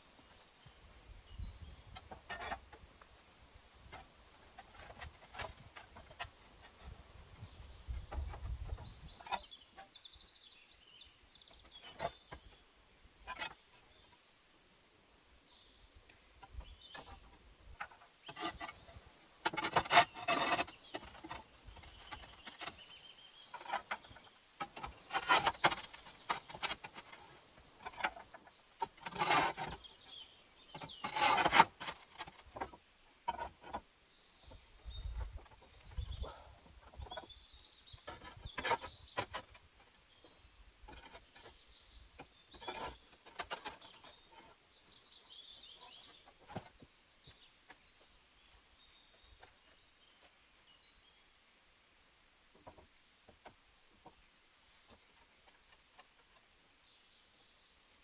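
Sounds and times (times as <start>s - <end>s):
small birds chirping: 0.0s - 58.0s
wood scraping and knocking: 1.7s - 3.2s, 3.8s - 10.0s, 11.5s - 12.6s, 13.2s - 13.6s, 16.4s - 47.8s
rasping strokes on wood: 19.4s - 22.8s, 23.6s - 30.0s, 30.7s - 32.7s.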